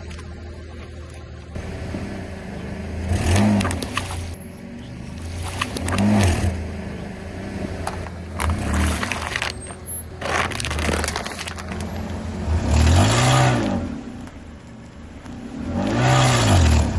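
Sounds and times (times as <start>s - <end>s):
car engine revving: 1.6s - 16.9s
objects crunching and scraping: 7.8s - 14.4s.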